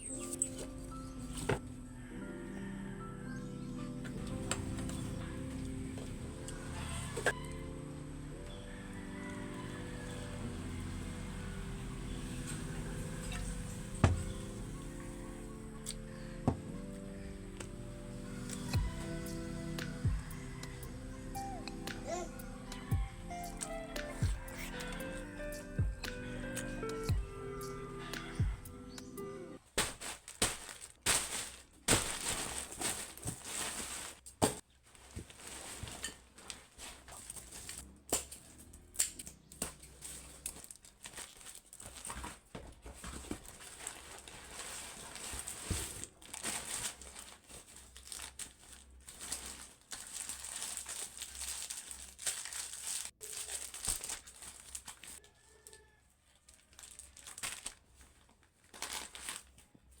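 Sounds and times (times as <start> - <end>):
packaging crinkling and rustling: 29.6 - 60.0
packaging tearing: 29.7 - 34.3, 43.1 - 55.2, 56.6 - 59.6.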